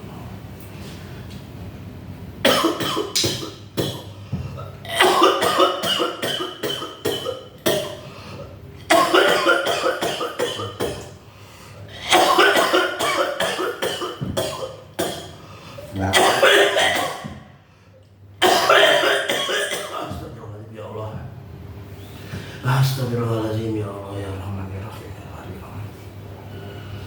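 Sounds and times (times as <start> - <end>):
person coughing hard: 2.4 - 8.1, 8.9 - 11.2, 11.9 - 15.4, 16.0 - 17.5, 18.4 - 20.3.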